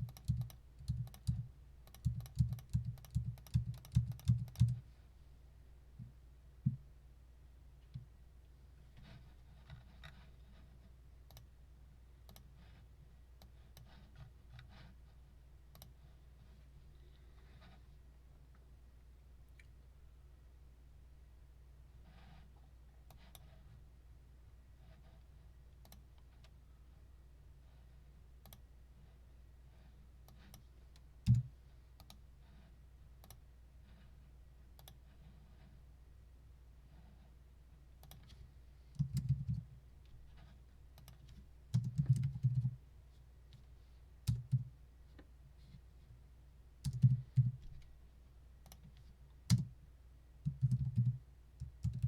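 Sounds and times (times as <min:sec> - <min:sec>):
faint irregular clicks: 0:00.0 - 0:04.8, 0:09.0 - 0:11.5, 0:12.2 - 0:12.8, 0:15.7 - 0:16.0, 0:22.6 - 0:23.6, 0:24.9 - 0:26.6, 0:28.4 - 0:28.7, 0:30.2 - 0:32.3, 0:33.2 - 0:34.1, 0:34.7 - 0:35.7, 0:38.0 - 0:42.7, 0:48.6 - 0:49.7.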